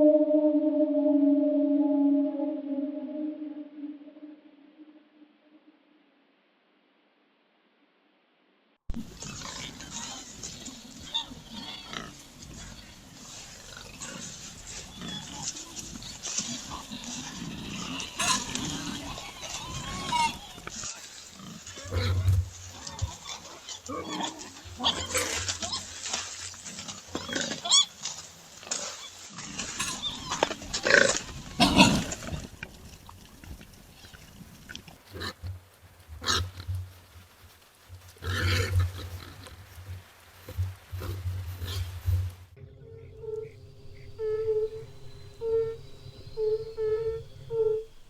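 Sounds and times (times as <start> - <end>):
wild boar grunting: 28.7 - 32.5, 38.2 - 39.6.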